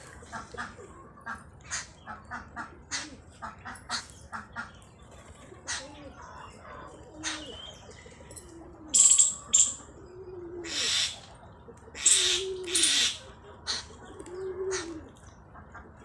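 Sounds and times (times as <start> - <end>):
birds cooing: 0.0 - 16.0.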